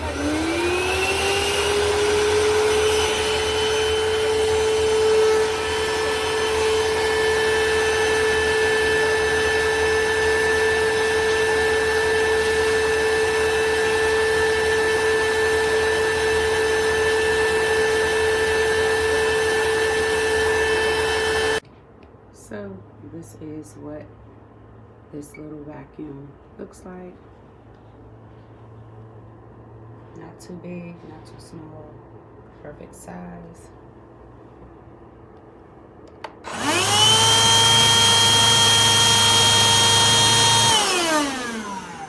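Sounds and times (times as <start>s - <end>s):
handheld vacuum motor whine: 0.0s - 21.6s, 36.2s - 42.0s.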